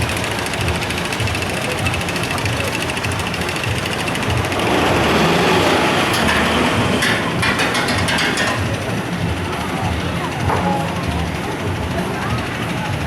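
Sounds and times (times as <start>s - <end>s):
roller coaster rumbling on track: 0.0s - 13.0s
rattling clatters: 3.7s - 9.1s.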